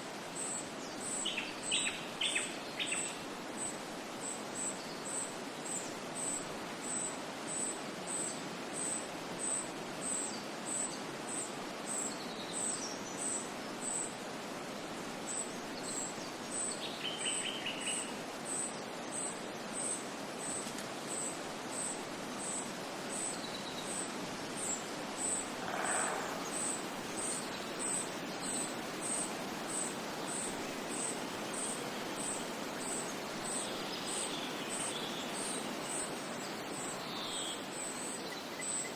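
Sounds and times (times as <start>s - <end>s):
bird calls: 15.3s - 38.9s
steady rushing noise: 23.9s - 33.5s
cricket chirping: 24.0s - 33.6s.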